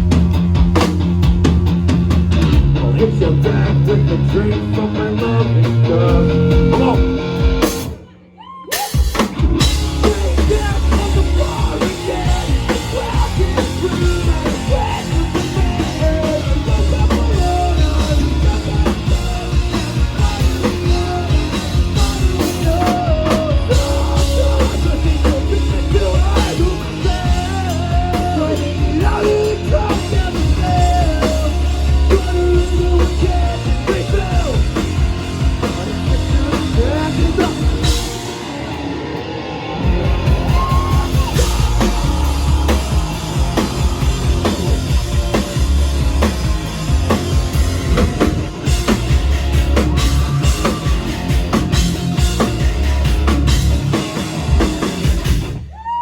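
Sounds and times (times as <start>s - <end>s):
drum kit: 0.0s - 8.0s, 8.7s - 56.0s
guitars: 0.0s - 8.2s, 8.9s - 56.0s
person singing lead vocal: 2.8s - 7.3s, 7.9s - 38.2s, 40.2s - 45.5s.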